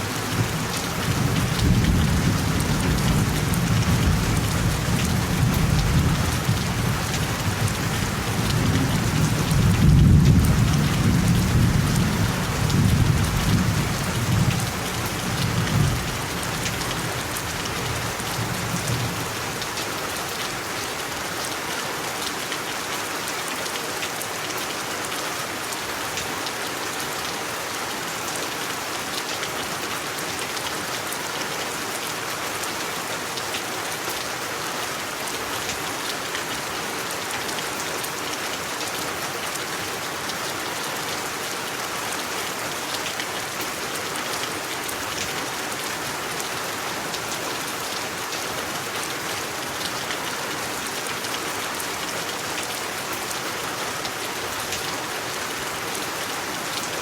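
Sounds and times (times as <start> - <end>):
steady rain falling: 0.0 - 57.0.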